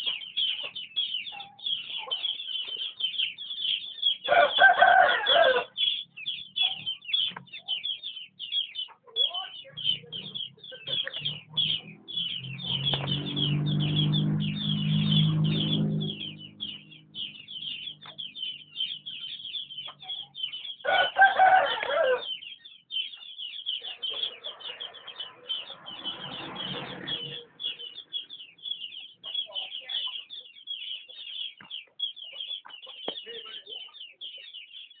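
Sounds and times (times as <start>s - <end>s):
chickens peeping: 0.0s - 35.0s
chicken drawn-out call: 4.2s - 5.8s, 20.8s - 22.4s
chicken squawk: 4.2s - 6.0s, 16.0s - 22.4s.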